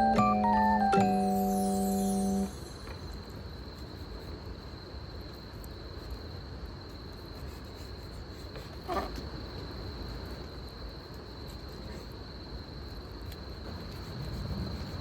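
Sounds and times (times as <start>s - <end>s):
insects singing: 0.0s - 2.9s.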